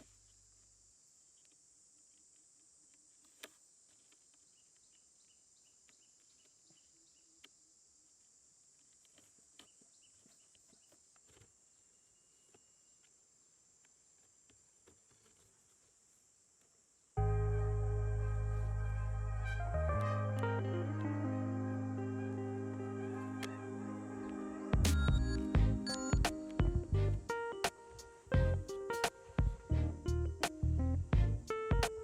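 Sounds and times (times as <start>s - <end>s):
music: 17.2s - 32.0s.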